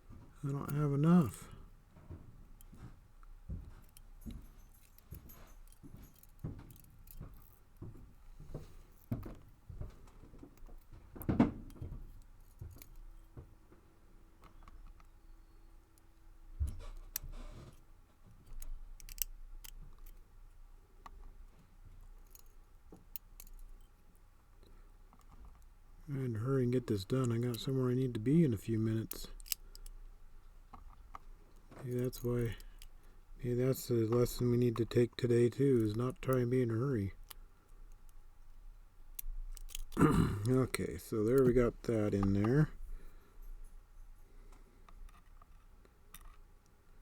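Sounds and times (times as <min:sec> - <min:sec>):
light metallic clicks and taps: 0:15.9 - 0:20.3.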